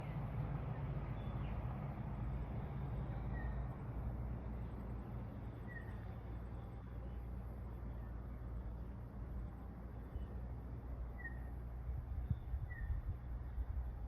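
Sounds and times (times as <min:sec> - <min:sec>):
faint bird chirps: 0:05.6 - 0:08.5, 0:10.0 - 0:10.5, 0:11.1 - 0:13.5.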